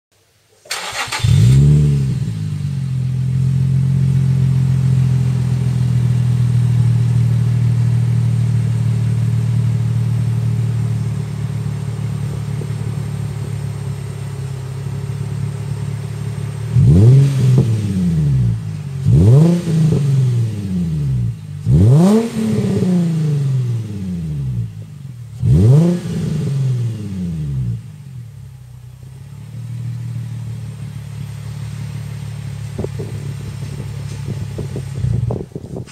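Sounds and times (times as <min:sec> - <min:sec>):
car engine starting and idling: 0:00.5 - 0:35.9
engine revving: 0:00.7 - 0:05.7, 0:16.3 - 0:27.9.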